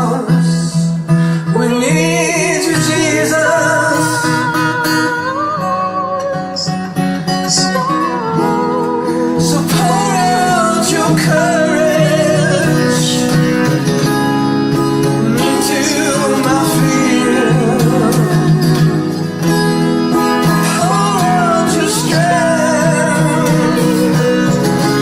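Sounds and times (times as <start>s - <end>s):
guitar accompaniment: 0.0s - 25.0s
voices singing a duet: 7.8s - 13.7s, 15.1s - 25.0s.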